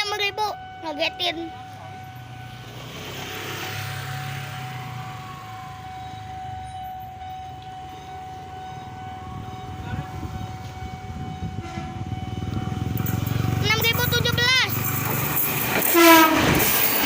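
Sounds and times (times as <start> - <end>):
vehicle passing by: 2.1 - 6.2, 12.3 - 16.0.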